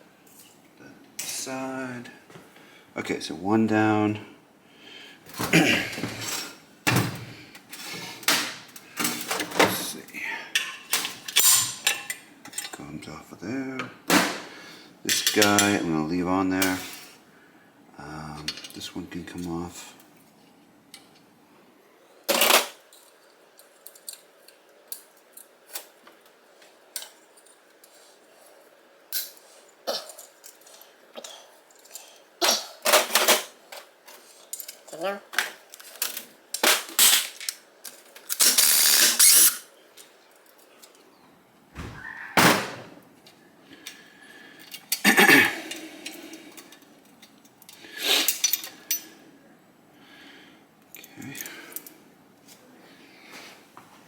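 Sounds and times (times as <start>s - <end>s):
metal parts clinking and knocking: 10.8s - 12.8s.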